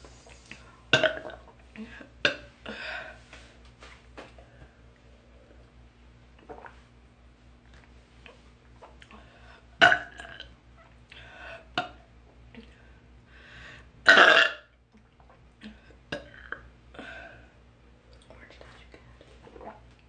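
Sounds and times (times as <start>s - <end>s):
throat and mouth sounds: 6.4s - 6.8s
woman burping loudly: 14.1s - 14.7s.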